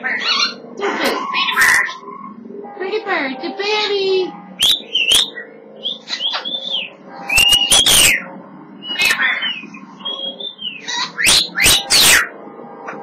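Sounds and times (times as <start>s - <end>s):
parrot whistling and chirping: 0.0s - 2.3s, 4.6s - 12.3s.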